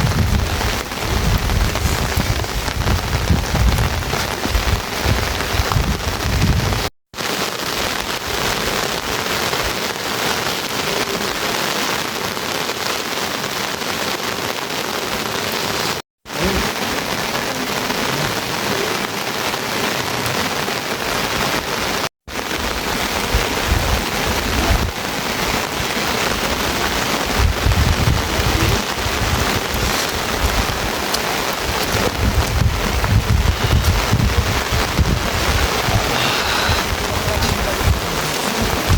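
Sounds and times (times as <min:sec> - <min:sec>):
heavy rain falling: 0:00.0 - 0:38.9
low rumbling: 0:23.3 - 0:38.9.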